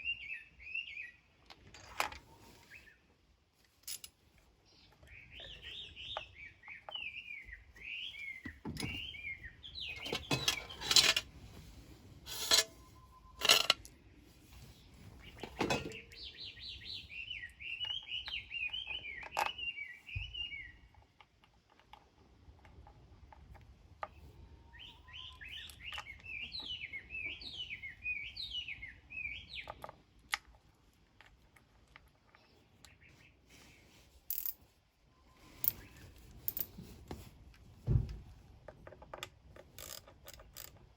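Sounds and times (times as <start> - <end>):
small bird chirping: 4.6 - 11.1, 14.6 - 21.2, 24.1 - 30.2, 35.1 - 36.7.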